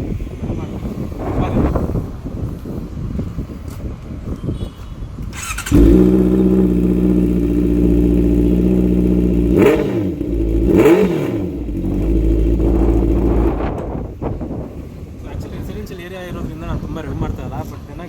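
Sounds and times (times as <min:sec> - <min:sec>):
motorcycle throttle blips: 0:05.2 - 0:14.6
motorcycle engine idling: 0:05.4 - 0:14.1.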